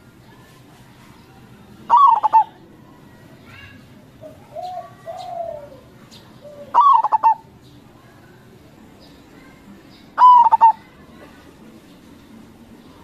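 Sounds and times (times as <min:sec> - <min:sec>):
dove cooing: 0:01.9 - 0:02.6, 0:04.2 - 0:07.5, 0:10.2 - 0:10.9.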